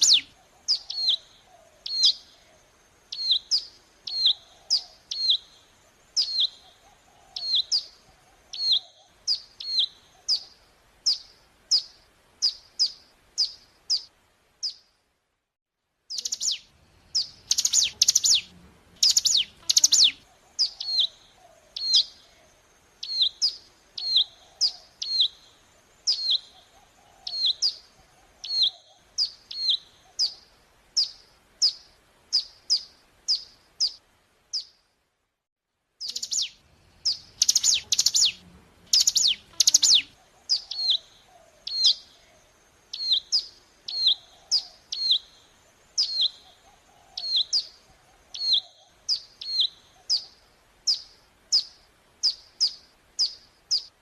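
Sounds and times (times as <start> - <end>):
bird chirping: 0.0 - 15.0, 16.1 - 34.8, 36.0 - 54.0.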